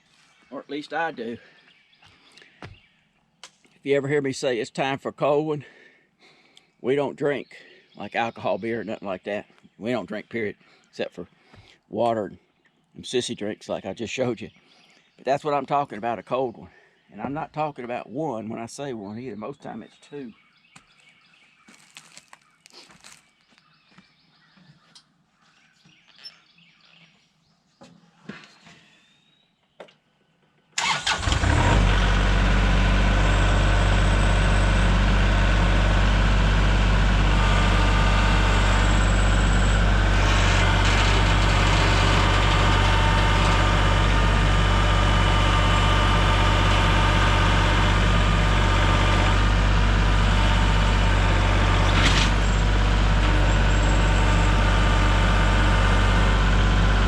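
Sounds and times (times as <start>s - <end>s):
engine running with deep hum: 31.1s - 57.0s.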